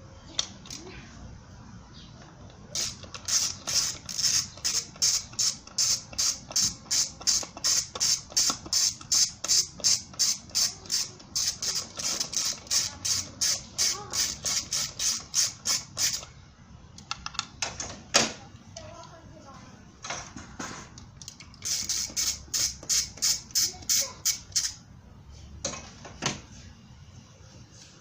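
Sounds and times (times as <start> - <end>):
ratchet wrench clicking: 2.8 - 16.3, 21.2 - 24.8.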